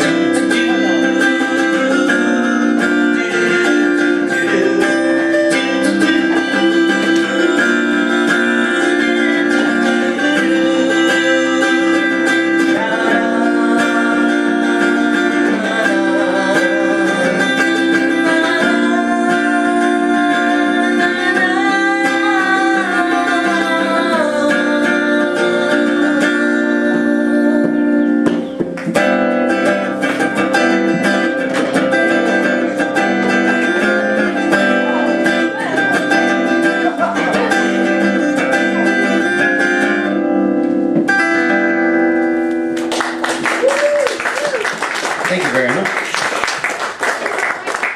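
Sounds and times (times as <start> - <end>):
man singing: 0.0 - 28.5, 30.5 - 40.1
acoustic guitar: 0.0 - 47.9.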